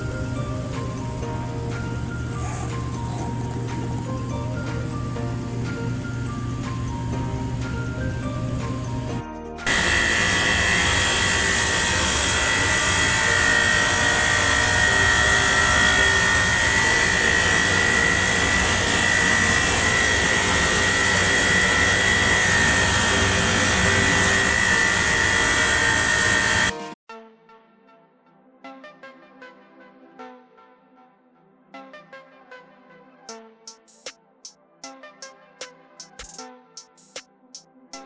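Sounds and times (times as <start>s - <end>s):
machine running with high whine: 0.0s - 27.0s.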